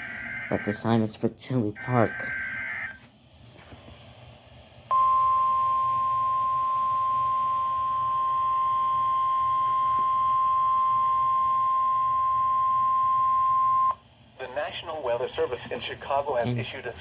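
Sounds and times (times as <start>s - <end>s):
steady warning alarm tone: 0.0s - 1.0s, 1.8s - 3.0s, 4.9s - 14.0s.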